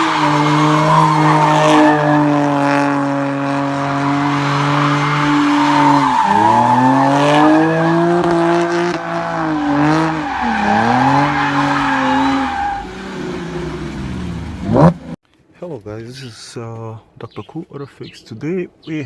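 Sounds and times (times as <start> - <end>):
car engine revving: 0.0 - 15.2.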